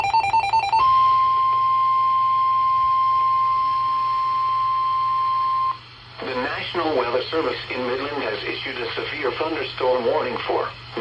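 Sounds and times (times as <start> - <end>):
high-pitched warning alarm tone: 0.0 - 2.2.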